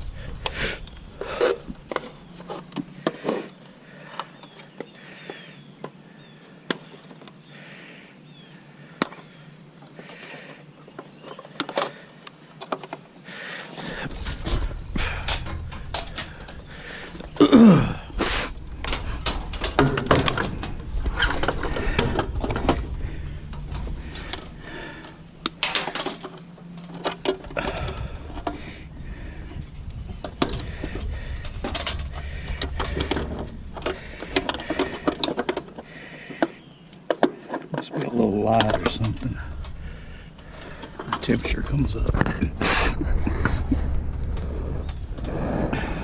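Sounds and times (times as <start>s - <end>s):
metal parts and tools clanking: 13.8s - 36.5s, 37.1s - 42.6s.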